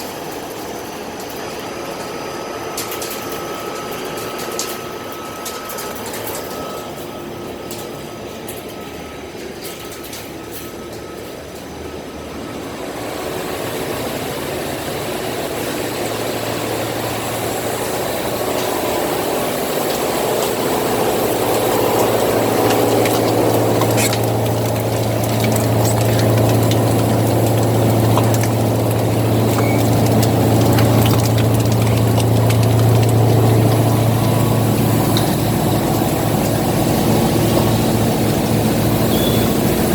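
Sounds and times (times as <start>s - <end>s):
recycling machinery humming: 0.0s - 39.9s
mechanical noise: 15.9s - 39.9s.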